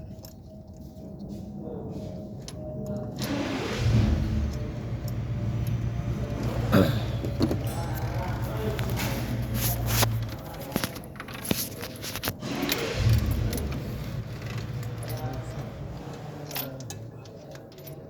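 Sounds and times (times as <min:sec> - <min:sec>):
car engine running: 0:03.2 - 0:11.5, 0:12.4 - 0:16.6.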